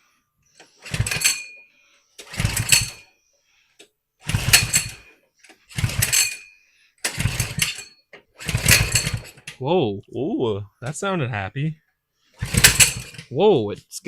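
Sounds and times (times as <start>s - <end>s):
small engine pull-start cranking: 0.6s - 1.6s, 2.2s - 3.0s, 4.2s - 9.6s, 12.4s - 13.3s.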